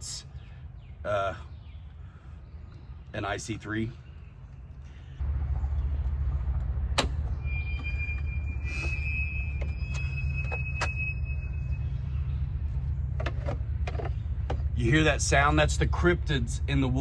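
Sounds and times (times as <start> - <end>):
low rumble: 4.0 - 17.0
high steady squeal: 6.5 - 14.4.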